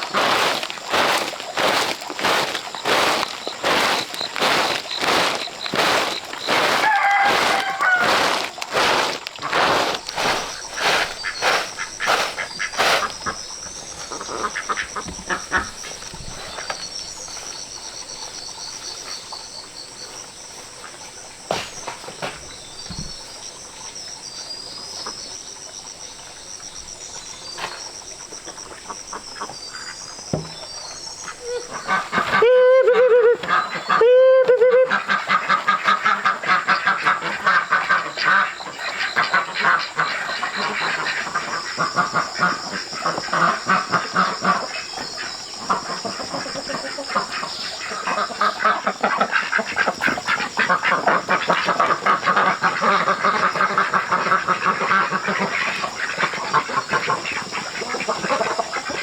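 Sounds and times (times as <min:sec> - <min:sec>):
small birds chirping: 0:00.0 - 0:20.2
farm fowl calling rapidly: 0:00.1 - 0:13.4.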